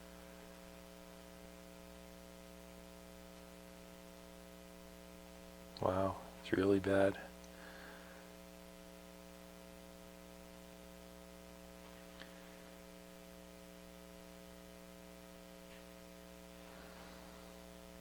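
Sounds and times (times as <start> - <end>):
faint mains hum: 0.0 - 18.0.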